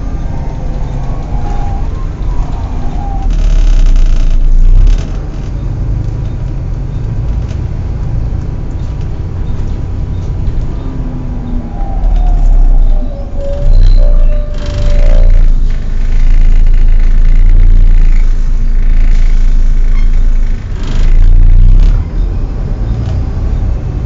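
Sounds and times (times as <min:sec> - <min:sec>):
faint whining tones sliding down: 0:00.0 - 0:05.1, 0:10.2 - 0:18.0
bus engine rumbling: 0:00.0 - 0:24.0.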